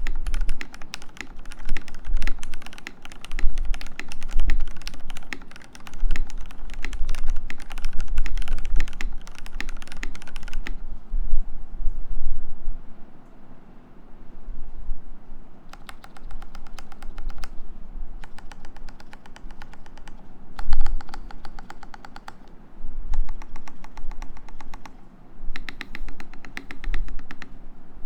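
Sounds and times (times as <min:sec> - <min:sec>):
mechanical keyboard typing: 0:00.0 - 0:10.8, 0:15.7 - 0:17.6, 0:18.2 - 0:25.0, 0:25.6 - 0:27.6.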